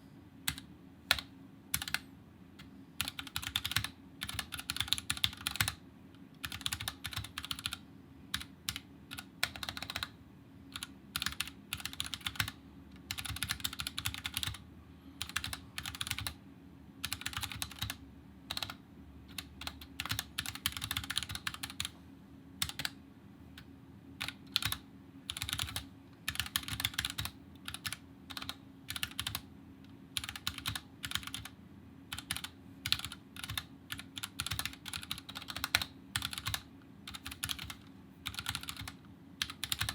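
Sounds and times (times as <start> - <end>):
mechanical keyboard typing: 0.5 - 2.0, 2.6 - 5.8, 6.4 - 14.6, 15.2 - 16.4, 17.0 - 21.9, 22.6 - 23.0, 23.6 - 29.5, 30.1 - 39.9.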